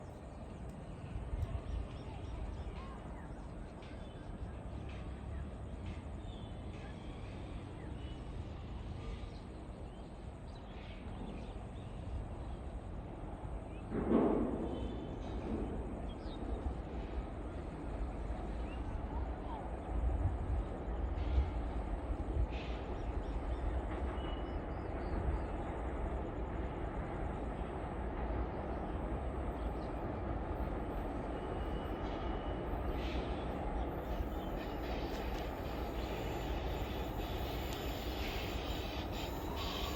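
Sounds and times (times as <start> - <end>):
goods train rumbling past: 0.0 - 39.9.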